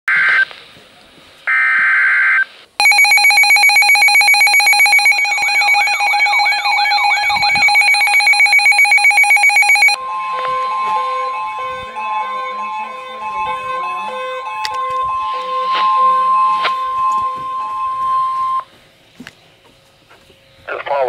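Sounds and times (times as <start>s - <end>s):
pulsing alarm tone: 2.8s - 18.7s.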